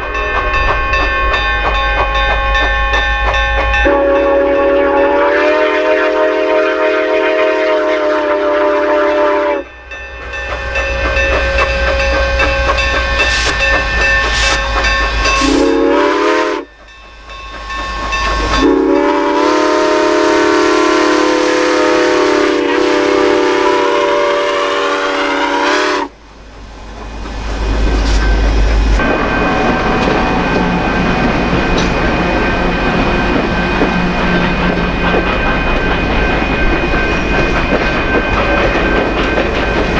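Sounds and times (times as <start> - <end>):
steam locomotive chime whistle: 0.0 - 26.2
train running: 0.0 - 39.9.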